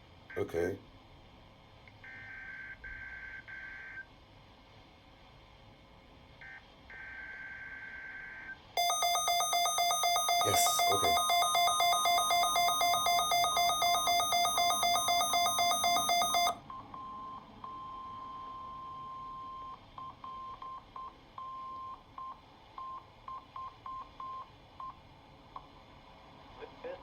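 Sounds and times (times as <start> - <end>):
warbling two-tone alarm: 8.8 - 16.6
warning tone beeps: 8.8 - 16.6.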